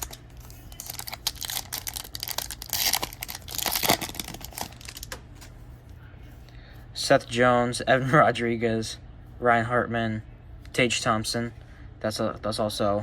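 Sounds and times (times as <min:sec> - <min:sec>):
plastic wrapper crinkling and tearing: 0:00.0 - 0:05.2
cards clicking and rustling: 0:00.0 - 0:05.6.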